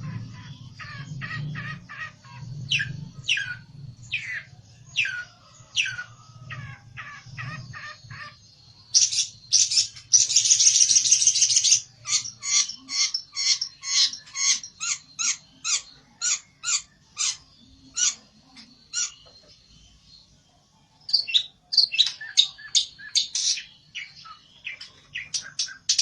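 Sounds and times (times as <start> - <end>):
shrike harsh grating calls: 0.0 - 19.3.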